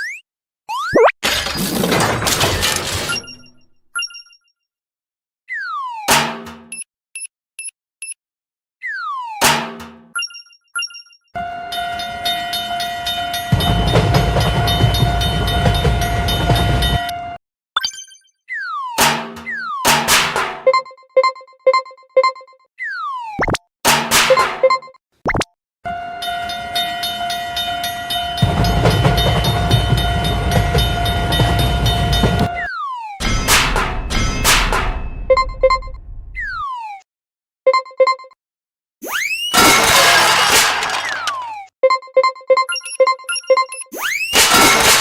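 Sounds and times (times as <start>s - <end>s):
train horn tone: 11.4s - 17.4s, 25.9s - 32.6s
railroad crossing bell clanging: 11.7s - 17.2s, 26.2s - 32.6s
regular train clatter: 11.8s - 17.1s, 26.3s - 32.6s
low rumble of passing train: 28.2s - 32.4s.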